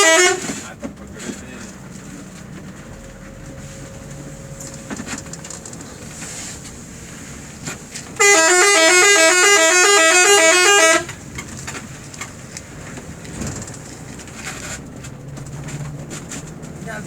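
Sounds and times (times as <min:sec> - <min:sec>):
musical bus horn: 0:00.0 - 0:11.9
bus running noise: 0:00.0 - 0:17.0.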